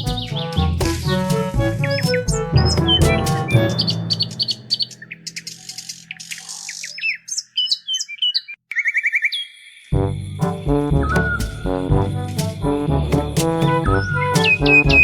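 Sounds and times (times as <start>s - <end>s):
music with a steady beat: 0.0s - 4.8s, 10.4s - 15.0s.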